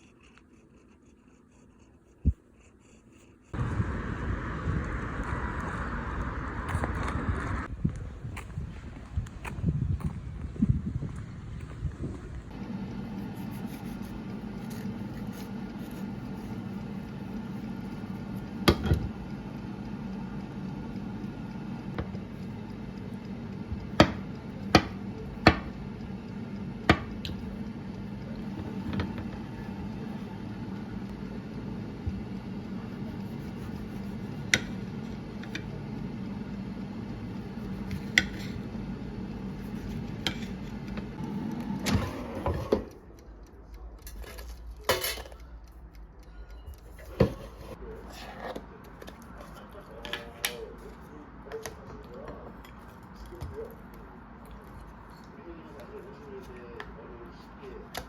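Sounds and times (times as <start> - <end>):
steady low hum: 0.0 - 58.0
dishes and utensils clinking: 44.4 - 45.4.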